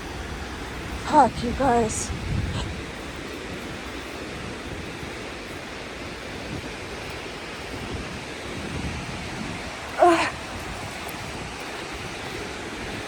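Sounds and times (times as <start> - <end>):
rushing outdoor background noise: 0.0 - 13.0.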